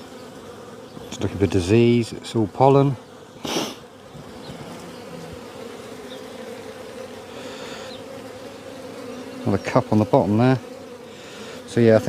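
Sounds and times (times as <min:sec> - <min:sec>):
bees buzzing: 0:00.0 - 0:12.0.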